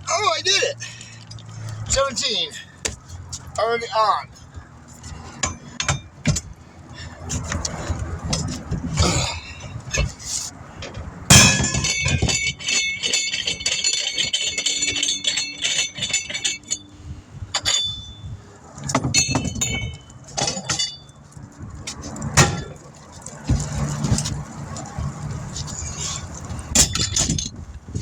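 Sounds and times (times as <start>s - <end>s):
metal clanking: 8.2s - 16.9s, 17.5s - 21.2s, 22.2s - 24.5s, 25.5s - 27.6s
metal clinks: 10.8s - 21.3s
metal pieces rattling and ringing: 11.3s - 16.9s, 17.6s - 18.2s.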